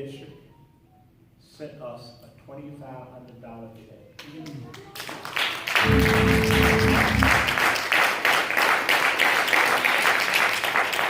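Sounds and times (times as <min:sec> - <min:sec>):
congregation applauding and cheering: 0:04.8 - 0:11.0
low instrumental chord: 0:05.8 - 0:07.9.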